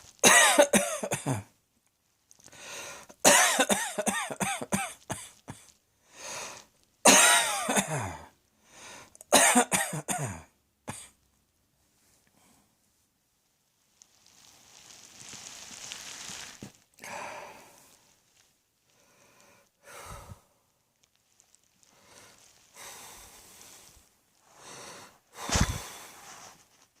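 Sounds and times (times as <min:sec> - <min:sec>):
person coughing: 0:00.2 - 0:01.5, 0:03.2 - 0:05.7, 0:07.1 - 0:08.3, 0:09.3 - 0:11.2
person breathing: 0:02.5 - 0:03.1, 0:06.0 - 0:06.7, 0:08.6 - 0:09.2, 0:17.0 - 0:18.1, 0:18.9 - 0:20.8, 0:21.8 - 0:26.7.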